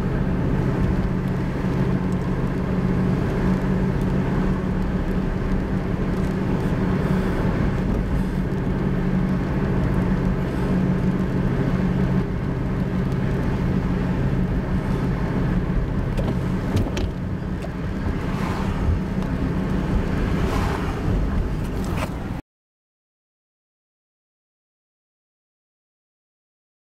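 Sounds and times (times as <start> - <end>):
car engine hum: 0.0 - 22.4
road noise: 0.0 - 22.4.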